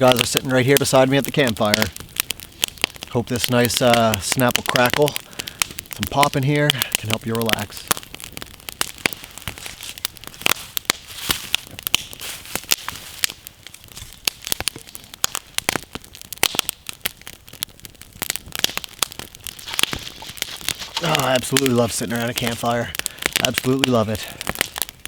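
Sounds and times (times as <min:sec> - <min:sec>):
campfire crackling and popping: 0:00.0 - 0:25.0
faint hiss of flame: 0:18.2 - 0:25.0.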